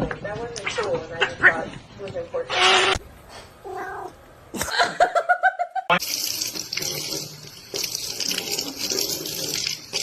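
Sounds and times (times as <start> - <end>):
water running from a tap: 6.0 - 10.0.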